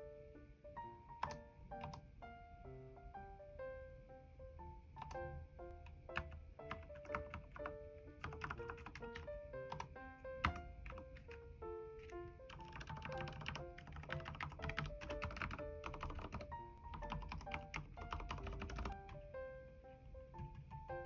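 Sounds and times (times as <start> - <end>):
background music: 0.0 - 21.0
keyboard key clicks: 1.2 - 2.0.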